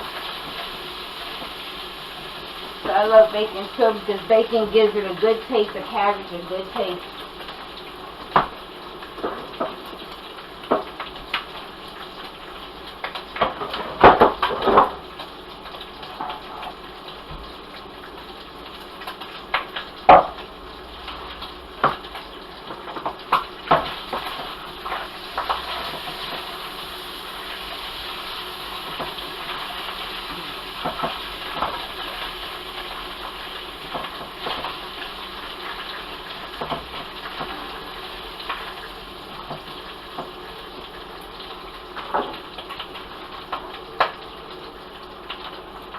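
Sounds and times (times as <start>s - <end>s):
frying hiss: 0.0s - 45.9s.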